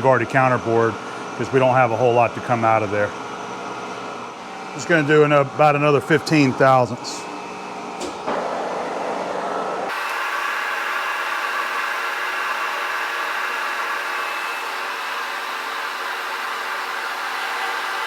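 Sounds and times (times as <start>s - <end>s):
milling machine cutting steel: 9.9s - 18.0s.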